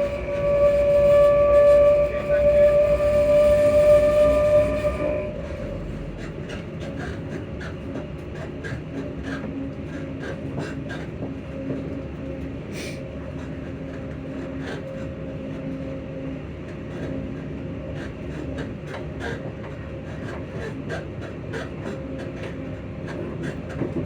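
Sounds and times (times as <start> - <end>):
electric train motor hum: 0.0 - 6.8
rail running noise: 0.0 - 24.0.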